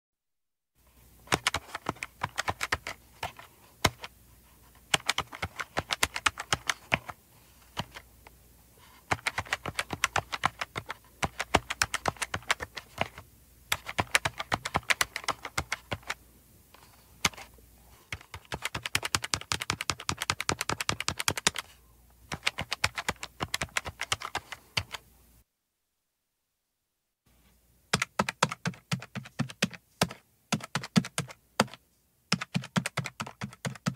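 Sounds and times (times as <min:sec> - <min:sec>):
calculator buttons clicking: 0:01.3 - 0:04.1, 0:04.9 - 0:08.0, 0:09.1 - 0:16.2, 0:18.1 - 0:21.6, 0:22.3 - 0:25.0, 0:27.9 - 0:33.9.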